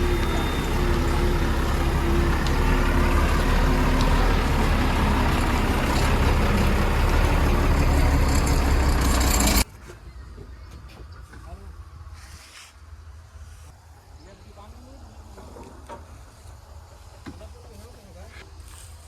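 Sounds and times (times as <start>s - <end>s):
diesel engine rumbling: 0.0s - 9.7s.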